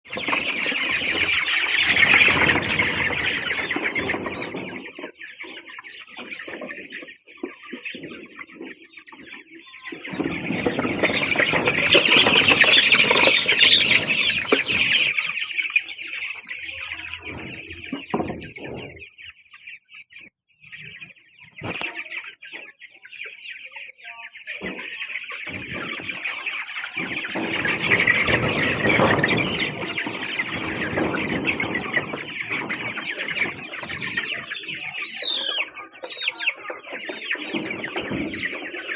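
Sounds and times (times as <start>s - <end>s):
young chickens peeping and clucking: 0.0s - 38.9s.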